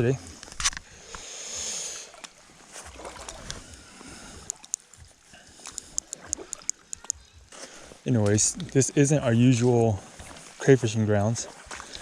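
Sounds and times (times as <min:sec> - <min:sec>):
creek water sloshing and gurgling: 0:00.0 - 0:12.0
faint clicks and taps: 0:05.6 - 0:07.3.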